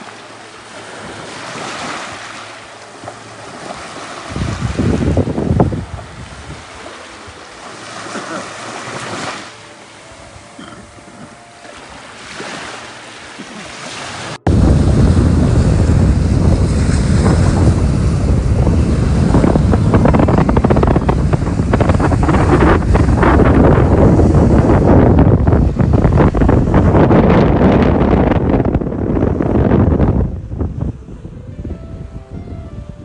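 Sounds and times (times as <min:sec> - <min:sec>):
sea waves washing onto shore: 0:00.0 - 0:30.9
wind rumble on microphone: 0:03.0 - 0:07.5, 0:14.1 - 0:33.0.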